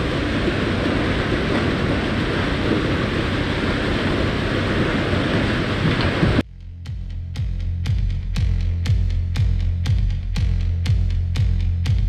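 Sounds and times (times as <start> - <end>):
concrete mixer truck rumbling: 0.0 - 6.4.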